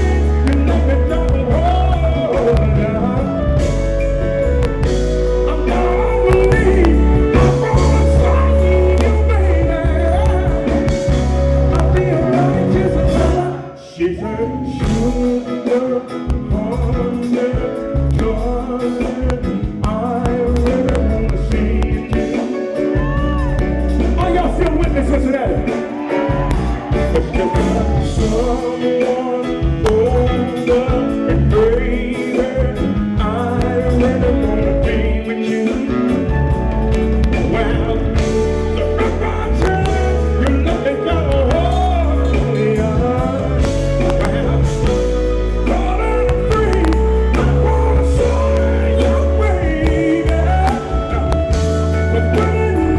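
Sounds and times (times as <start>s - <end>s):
bass groove: 0.0s - 13.6s, 14.6s - 52.9s
funk band playing: 0.0s - 52.9s.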